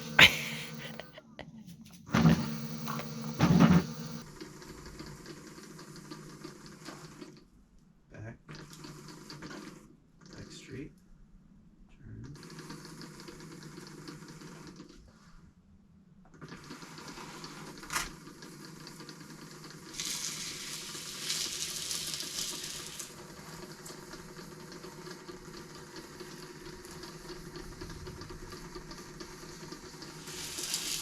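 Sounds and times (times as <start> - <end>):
hub motors hissing and humming: 0.0 - 1.1, 1.9 - 4.2.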